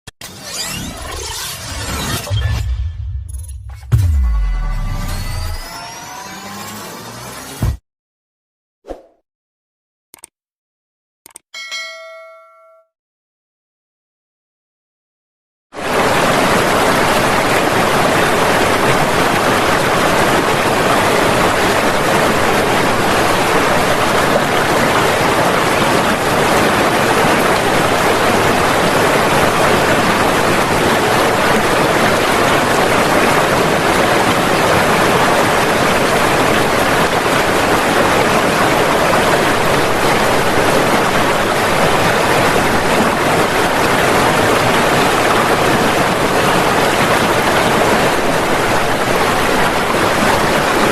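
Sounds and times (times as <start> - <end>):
floodwater rushing: 15.8 - 50.9.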